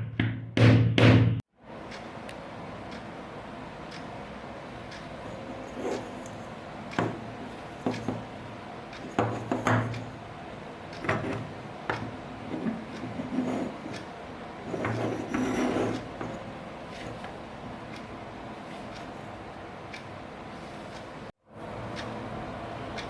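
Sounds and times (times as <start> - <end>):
knocks of hard parts: 0.0 - 1.4
scraping of hard parts: 12.5 - 14.0, 14.7 - 17.3.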